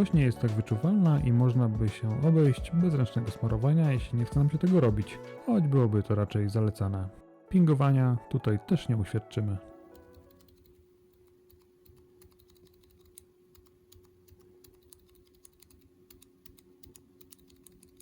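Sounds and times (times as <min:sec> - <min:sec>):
soft keyboard typing: 0:09.8 - 0:18.0.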